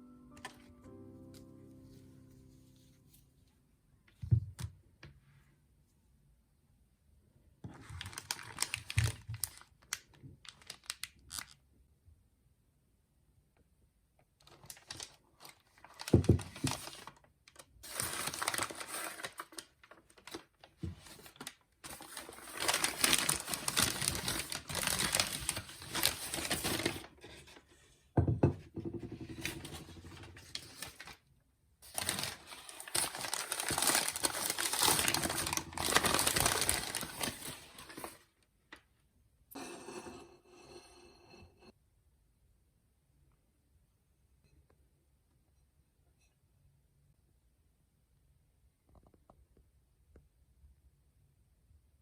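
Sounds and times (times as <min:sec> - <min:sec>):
packaging rustling and crinkling: 0:07.7 - 0:11.6, 0:14.4 - 0:27.6, 0:29.3 - 0:31.2, 0:31.8 - 0:38.3.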